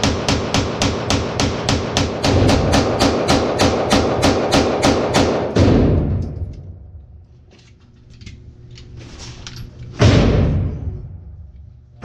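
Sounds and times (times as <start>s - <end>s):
loud gunshots echoing: 0.0s - 6.4s.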